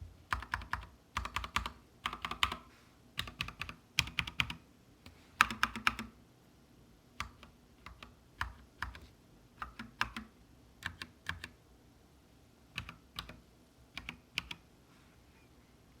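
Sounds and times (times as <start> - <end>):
mechanical keyboard typing: 0.3 - 4.6, 5.4 - 6.2, 7.2 - 11.6, 12.8 - 13.4, 14.0 - 14.6.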